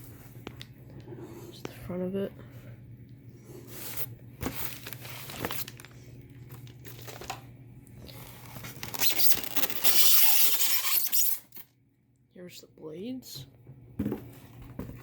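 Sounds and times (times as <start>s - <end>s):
packaging crinkling and rustling: 3.7s - 7.5s, 8.1s - 11.7s.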